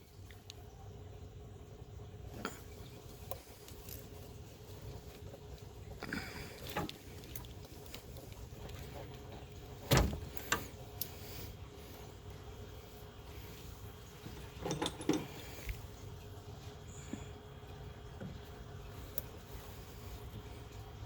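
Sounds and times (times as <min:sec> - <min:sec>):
steady low hum: 0:00.0 - 0:21.0
tools clicking and knocking: 0:14.6 - 0:15.5.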